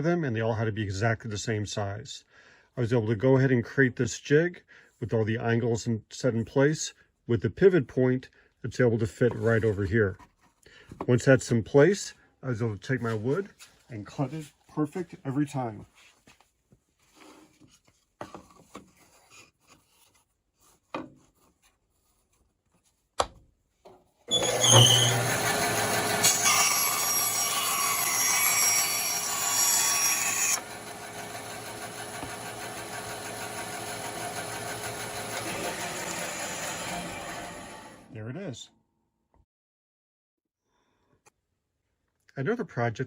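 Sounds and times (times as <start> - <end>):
bandsaw blade cutting wood: 24.3 - 38.1
bandsaw motor humming: 24.3 - 38.1.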